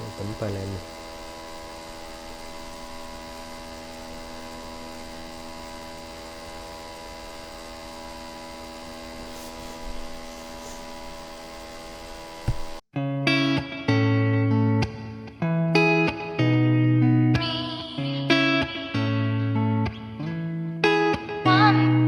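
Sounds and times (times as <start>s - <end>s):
steady hum of held tones: 0.0s - 12.5s.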